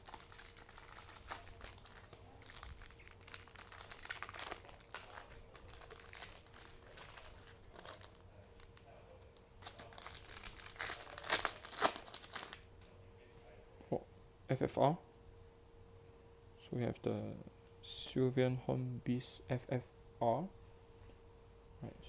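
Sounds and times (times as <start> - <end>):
foil wrappers crinkling: 0.0 - 12.9.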